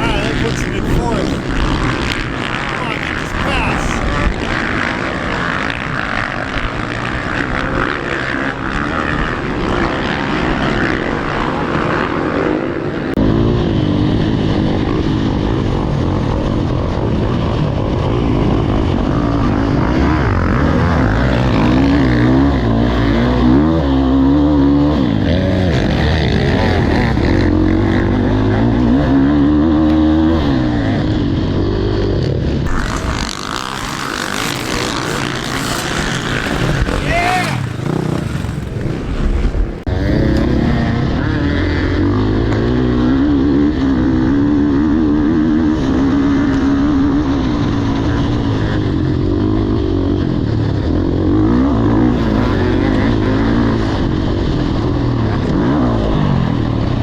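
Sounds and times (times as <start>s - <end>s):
motocross bike engine revving: 0.0s - 4.9s, 32.7s - 40.8s.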